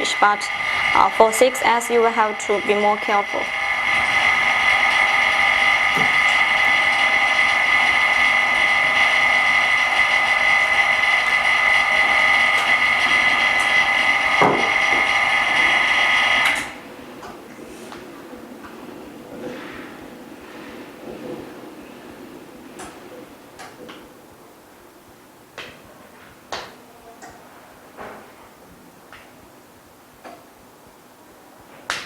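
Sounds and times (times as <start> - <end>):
small electric motor whining: 0.0 - 16.8.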